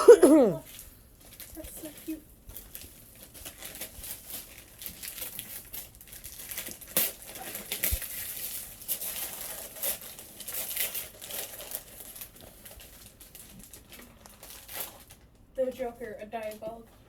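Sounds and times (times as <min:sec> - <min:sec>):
paper crinkling and rustling: 0:00.7 - 0:17.0.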